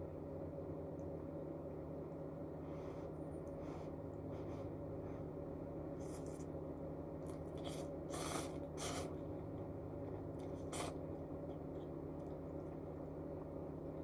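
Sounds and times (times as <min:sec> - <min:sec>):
low electrical hum: 0:00.0 - 0:14.0
person eating noodles: 0:07.3 - 0:09.2, 0:10.4 - 0:11.0.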